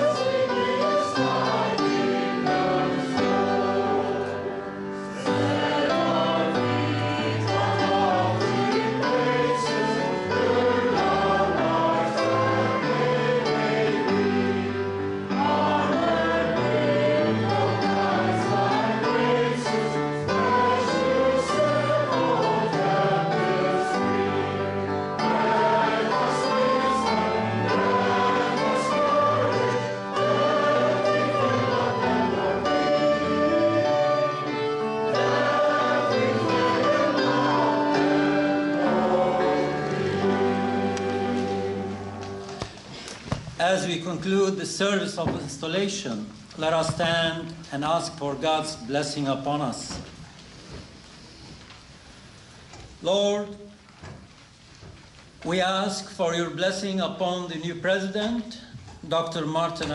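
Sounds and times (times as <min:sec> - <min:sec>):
instrumental accompaniment: 0:00.0 - 0:44.3
choir singing sacred music: 0:00.0 - 0:49.8.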